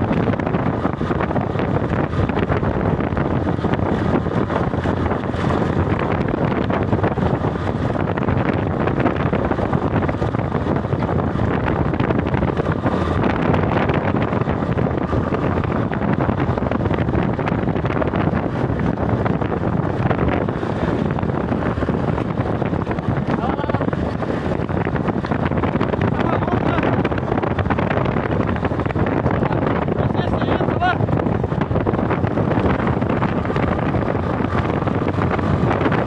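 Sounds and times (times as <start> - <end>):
wind buffeting microphone: 0.0 - 36.0.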